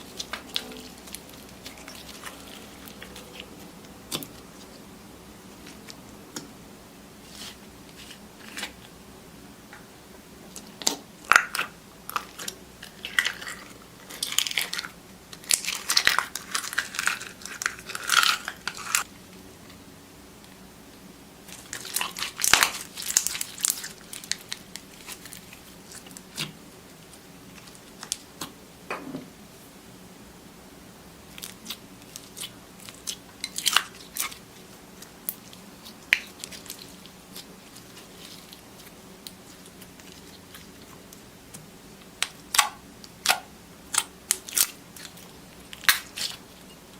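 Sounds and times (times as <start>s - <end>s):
slime crackling and popping: 10.5s - 19.1s, 21.4s - 26.5s, 31.3s - 41.2s, 42.0s - 46.5s.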